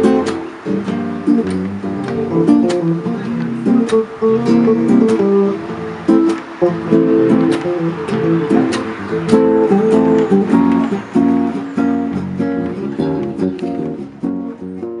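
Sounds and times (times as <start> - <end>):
acoustic strings strumming chords: 0.0 - 15.0.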